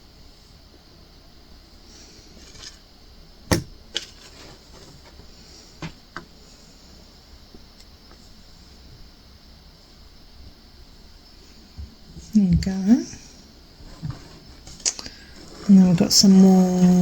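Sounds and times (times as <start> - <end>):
faint rustle: 11.3 - 17.0.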